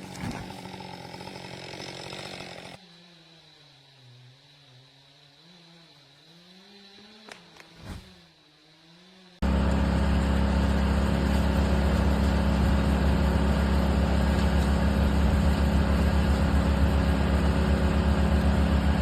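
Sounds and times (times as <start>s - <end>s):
engine running steadily: 9.1s - 19.0s.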